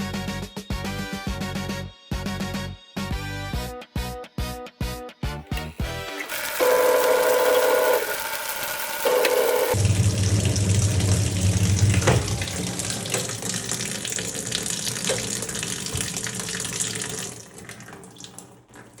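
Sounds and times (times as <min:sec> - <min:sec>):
electric motor hum: 0:05.6 - 0:13.4.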